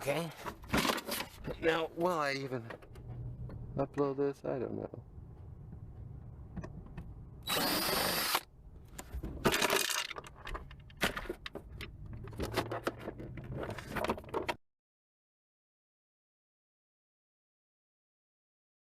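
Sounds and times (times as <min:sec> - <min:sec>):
power drill running: 0:07.4 - 0:08.5.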